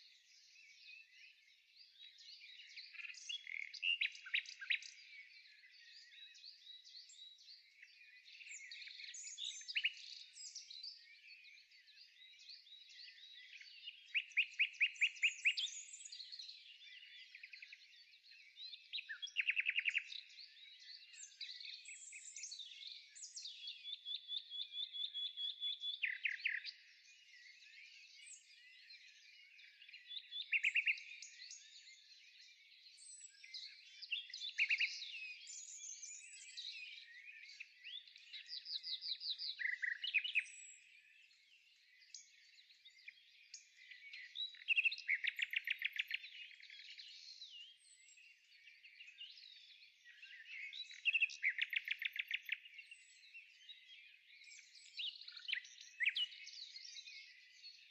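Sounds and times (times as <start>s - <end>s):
birds chirping and whistling: 32.8s - 41.3s, 42.0s - 57.8s.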